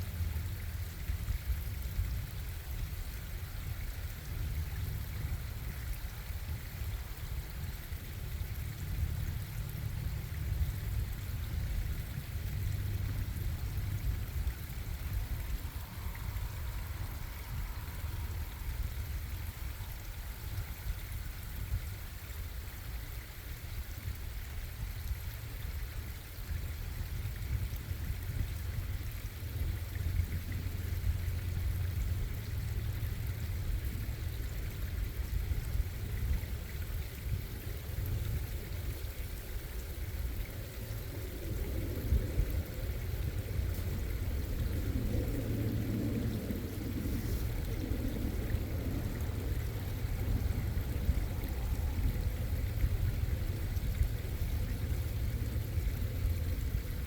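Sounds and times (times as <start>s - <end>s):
stream water flowing: 0.0s - 57.0s.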